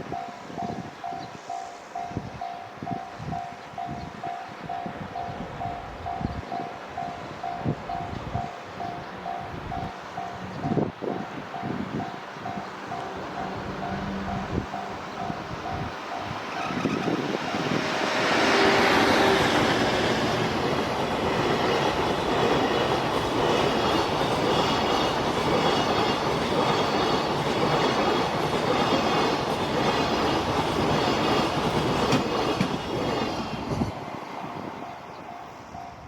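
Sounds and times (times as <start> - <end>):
wagon wheels rumbling on rails: 18.4 - 34.0.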